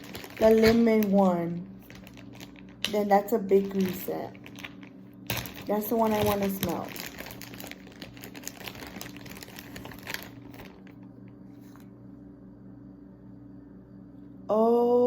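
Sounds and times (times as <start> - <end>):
packaging crinkling and clicking: 0.0 - 11.1.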